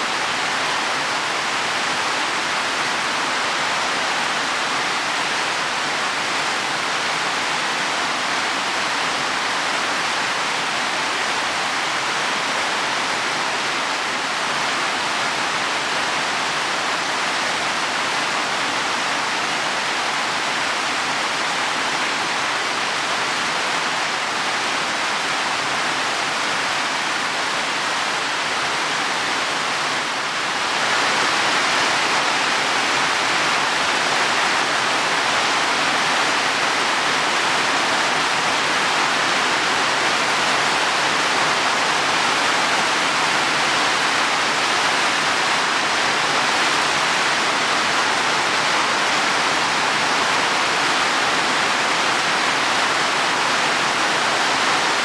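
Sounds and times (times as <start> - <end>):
heavy rain on leaves: 0.0 - 55.0.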